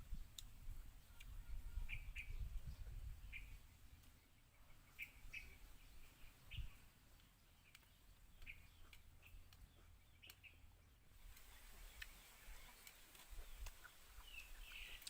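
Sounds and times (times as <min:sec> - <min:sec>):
soft clicks: 0:07.2 - 0:10.5.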